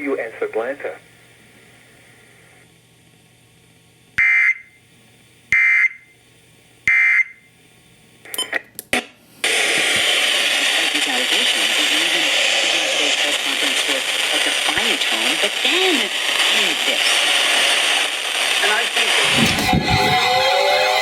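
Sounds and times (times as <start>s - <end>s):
radio static hiss: 0.0s - 2.7s, 8.9s - 20.2s
shrill warbling tone bursts: 19.3s - 21.0s.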